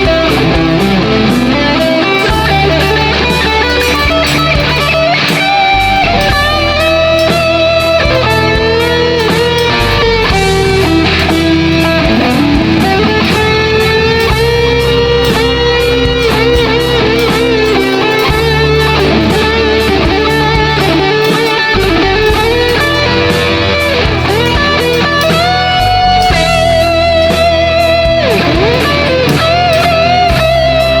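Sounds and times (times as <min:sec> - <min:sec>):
bass: 0:00.0 - 0:31.0
drums: 0:00.0 - 0:31.0
electric guitar blues lead: 0:00.0 - 0:31.0.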